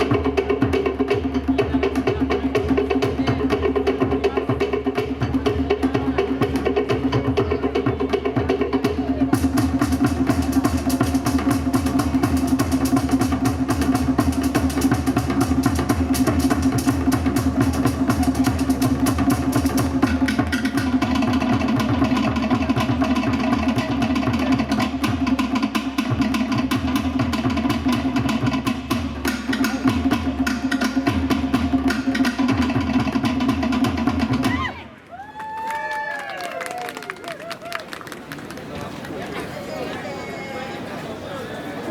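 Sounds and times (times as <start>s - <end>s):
fast wooden slit drums: 0.0s - 34.8s.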